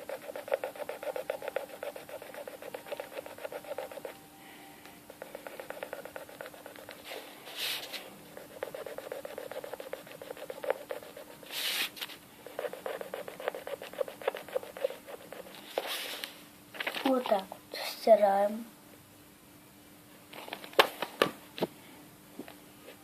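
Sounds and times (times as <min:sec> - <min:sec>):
eraser rubbing on paper: 0:00.0 - 0:04.2, 0:05.2 - 0:16.3.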